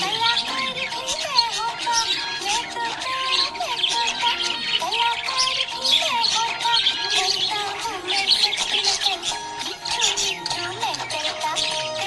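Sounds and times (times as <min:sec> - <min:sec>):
budgerigars chirping: 0:00.0 - 0:12.0
children's song music: 0:00.0 - 0:12.0.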